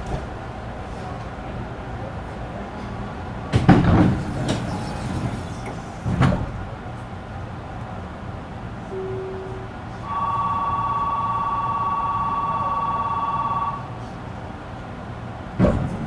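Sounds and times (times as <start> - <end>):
train car low hum: 0.0 - 16.0
loud mechanical thumps: 3.5 - 4.7, 15.6 - 16.0.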